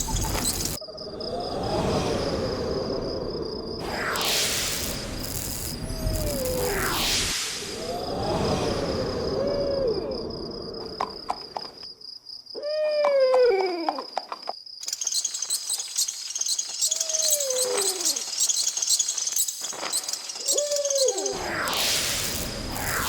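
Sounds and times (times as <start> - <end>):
insect chirring: 0.0 - 12.7, 13.8 - 23.0
owl hooting: 16.8 - 18.6, 20.4 - 21.8.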